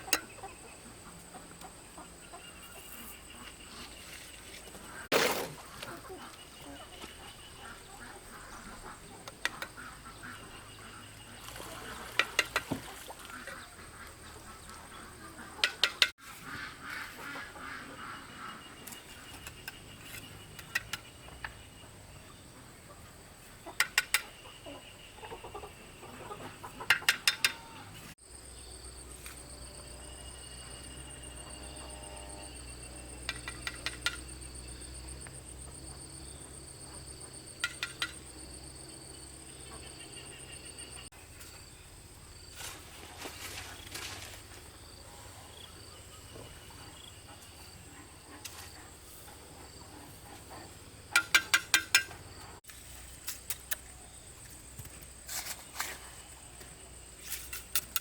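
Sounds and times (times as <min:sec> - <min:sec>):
faint rural background: 0:00.0 - 0:58.0
high insect drone: 0:27.1 - 0:47.9.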